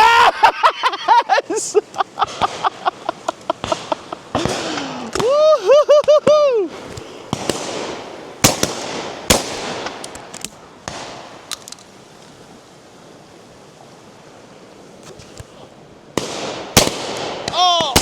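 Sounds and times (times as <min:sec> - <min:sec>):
background hiss: 0:00.0 - 0:18.0
shotgun shots: 0:07.3 - 0:10.0, 0:16.2 - 0:18.0.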